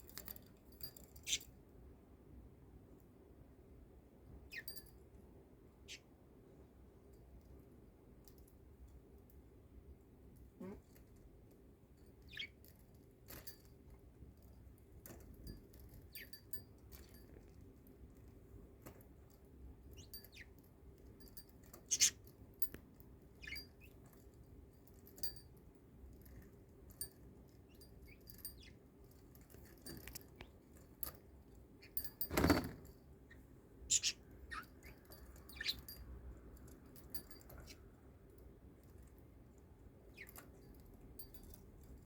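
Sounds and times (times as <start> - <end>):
light metallic jingles: 0.0 - 1.6, 4.5 - 5.2, 10.4 - 42.0
budgerigar chirping: 21.9 - 22.2, 33.9 - 34.6.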